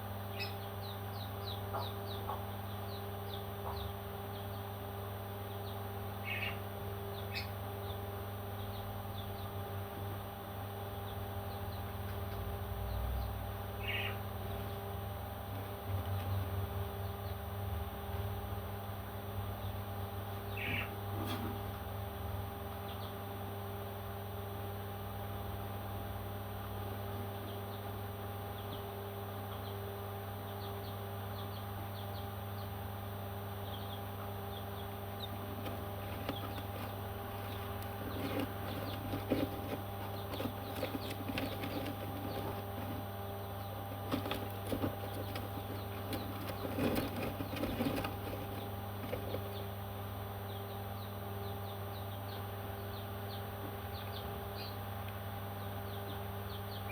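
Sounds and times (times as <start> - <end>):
machine hum: 0.0 - 56.9
baby parrots chirping: 34.8 - 43.0, 43.6 - 49.7
rustling and clicks: 35.5 - 43.1, 43.9 - 49.5.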